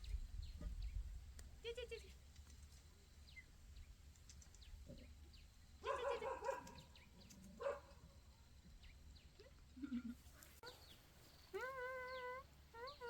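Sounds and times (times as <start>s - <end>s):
faint bird chirps: 2.9s - 13.0s
dog yelping and barking: 5.8s - 6.8s.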